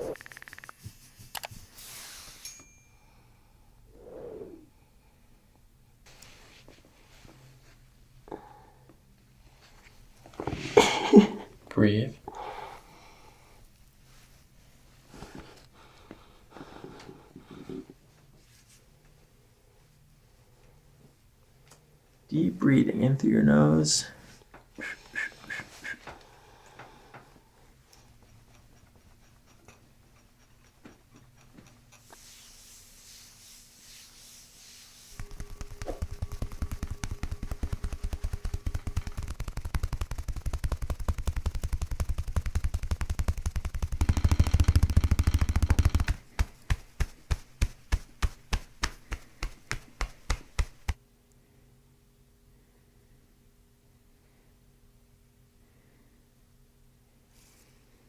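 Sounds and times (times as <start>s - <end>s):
percussion massager tapping: 0.0s - 1.8s, 35.2s - 51.0s.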